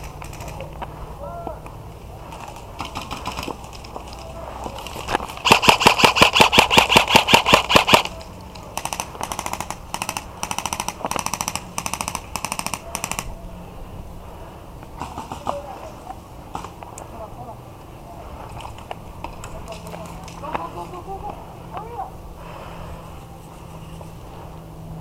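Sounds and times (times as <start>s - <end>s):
airsoft rifles firing full-auto: 2.3s - 3.6s, 5.4s - 13.3s, 15.0s - 15.7s.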